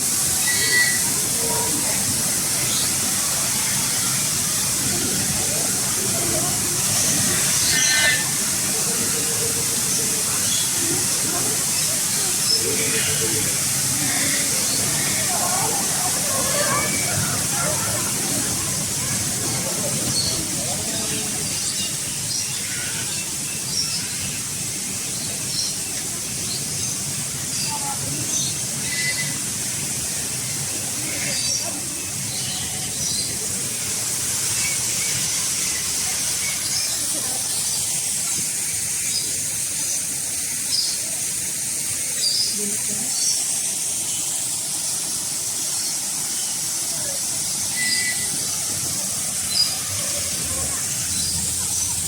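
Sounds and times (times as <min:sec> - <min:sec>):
steady hiss: 0:00.0 - 0:52.0
birds chirping: 0:47.6 - 0:52.0.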